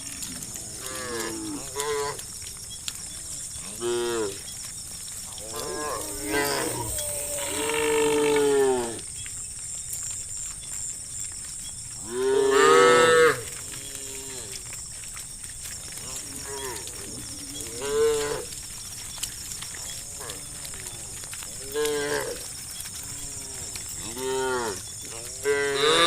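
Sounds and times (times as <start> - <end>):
cows mooing: 0.0 - 2.3, 3.1 - 4.5, 5.2 - 9.1, 12.0 - 14.7, 15.9 - 26.0.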